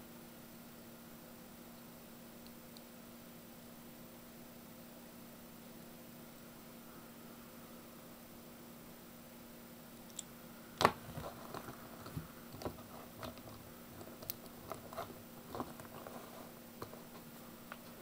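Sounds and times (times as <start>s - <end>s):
faint steady hiss: 0.0s - 18.0s
packaging clicks and crinkles: 10.8s - 17.9s.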